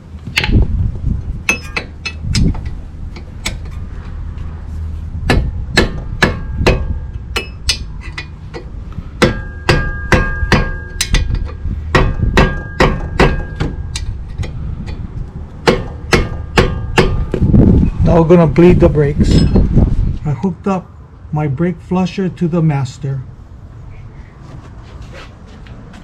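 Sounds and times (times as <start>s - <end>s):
hand tools knocking on metal: 5.3s - 15.0s, 15.6s - 17.4s.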